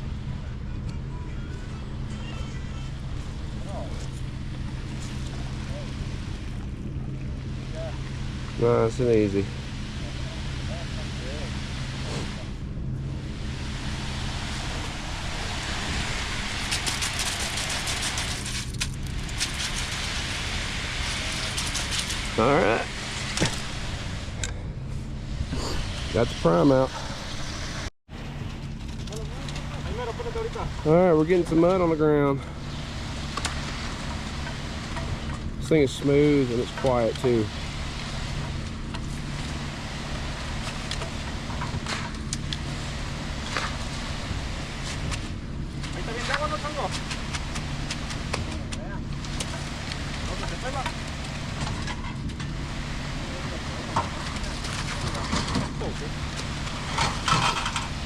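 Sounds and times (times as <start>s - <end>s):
engine running at low throttle: 0.0s - 58.0s
slurry spattering from hose: 16.3s - 23.7s.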